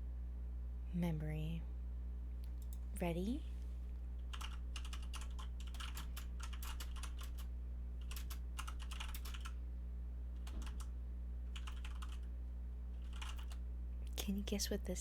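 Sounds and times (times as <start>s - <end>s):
low electrical hum: 0.0s - 15.0s
typing on computer keyboard: 4.2s - 9.6s, 10.4s - 10.9s, 11.5s - 12.3s, 13.0s - 13.6s.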